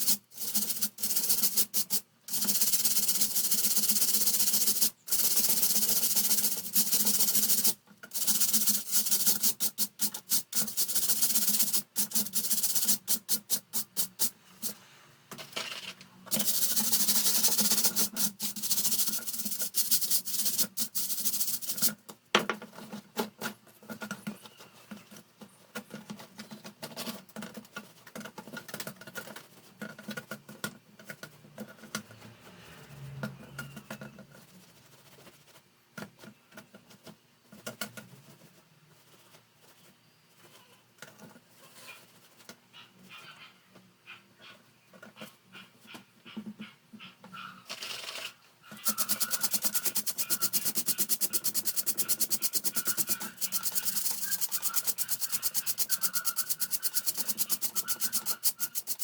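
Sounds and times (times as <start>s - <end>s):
scrubbing and rubbing: 48.8s - 59.0s.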